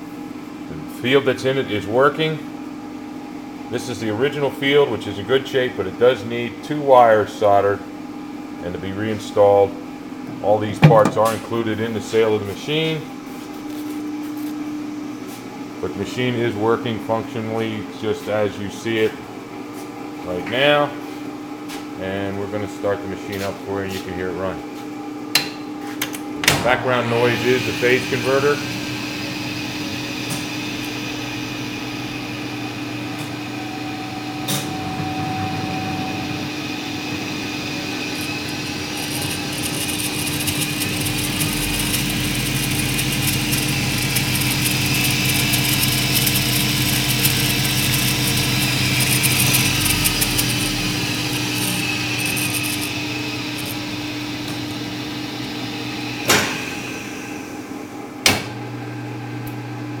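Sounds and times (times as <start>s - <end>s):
phase converter hum: 0.0s - 25.2s, 26.4s - 60.0s
sharp clunks: 10.8s - 11.4s
lathe spinning with a whir: 26.9s - 58.2s.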